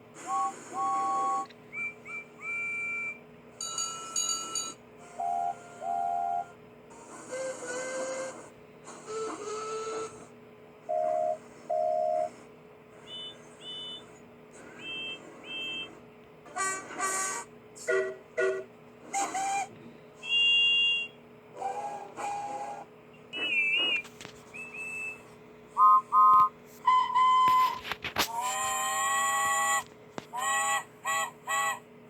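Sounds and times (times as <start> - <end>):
train whistle blasts: 0.2 - 3.2, 16.5 - 22.8, 25.8 - 31.8.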